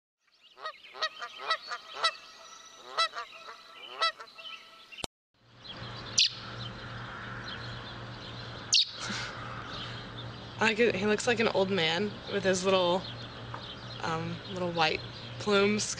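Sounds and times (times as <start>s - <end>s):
bird honking cries: 0.5s - 5.0s, 6.0s - 10.2s
steady low hum: 5.4s - 15.9s.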